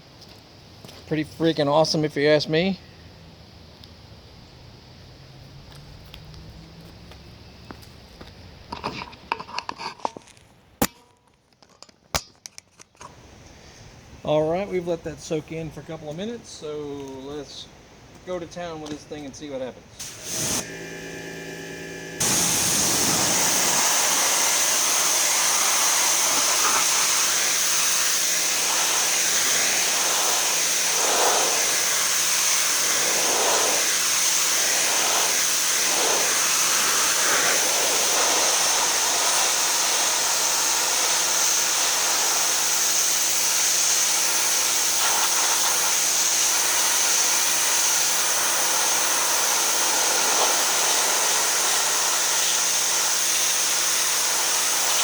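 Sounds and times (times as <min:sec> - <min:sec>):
water spray hissing: 0:20.0 - 0:21.0, 0:22.2 - 0:55.0
pressure washer motor humming: 0:20.0 - 0:55.0.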